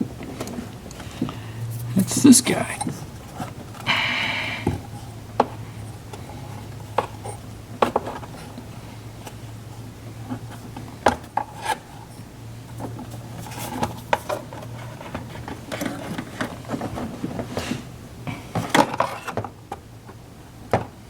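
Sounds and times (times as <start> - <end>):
low steady hum: 0.0 - 21.0.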